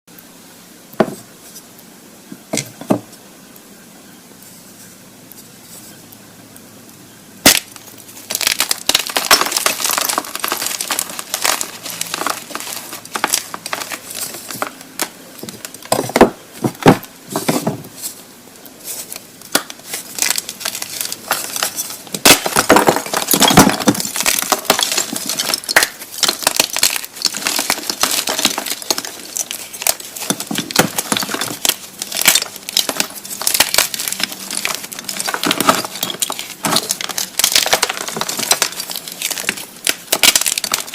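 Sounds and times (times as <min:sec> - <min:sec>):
chalk crunching and crackling: 0:07.4 - 0:15.9, 0:17.3 - 0:40.9.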